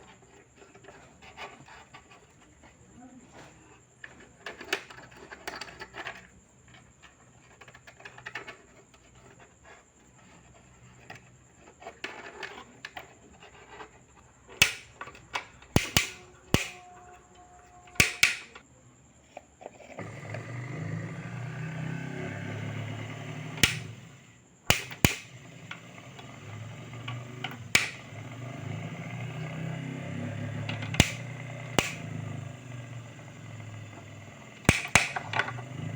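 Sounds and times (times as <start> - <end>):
clicks and knocks of parts: 14.5 - 16.8, 18.0 - 18.6, 23.5 - 28.4, 30.5 - 32.1, 33.8 - 35.9
mixer grinder motor running: 19.9 - 35.9.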